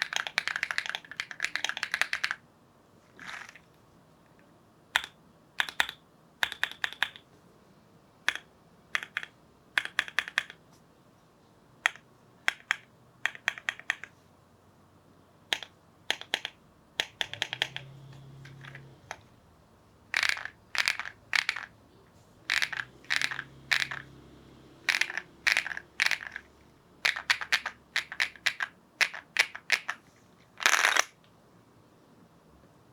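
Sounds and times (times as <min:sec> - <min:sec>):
mechanical keyboard typing: 0:00.0 - 0:02.4, 0:05.0 - 0:07.3, 0:08.3 - 0:10.6, 0:11.9 - 0:14.2, 0:15.5 - 0:19.3, 0:20.1 - 0:21.7, 0:22.5 - 0:24.2, 0:24.8 - 0:30.0.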